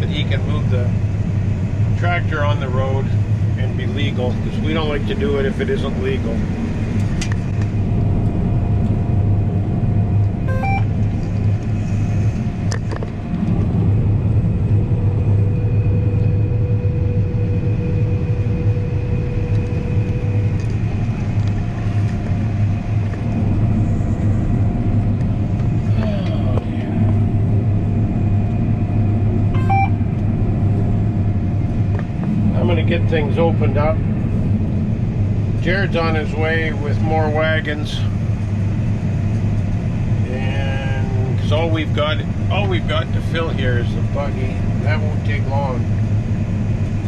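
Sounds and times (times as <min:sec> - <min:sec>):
deep engine hum: 0:00.0 - 0:47.0
whining machine tones: 0:09.4 - 0:12.7, 0:14.7 - 0:35.3.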